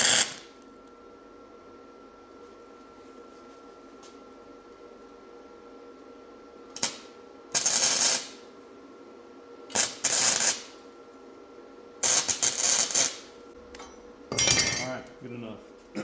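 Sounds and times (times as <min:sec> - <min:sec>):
crackling welding arc: 0:00.0 - 0:00.6, 0:06.8 - 0:08.5, 0:09.7 - 0:10.8, 0:12.0 - 0:13.3.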